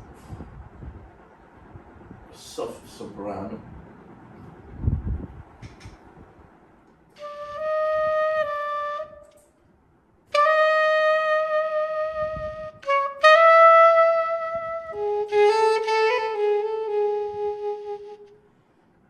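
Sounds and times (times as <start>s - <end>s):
soprano saxophone held notes: 7.2s - 9.4s, 10.4s - 18.4s.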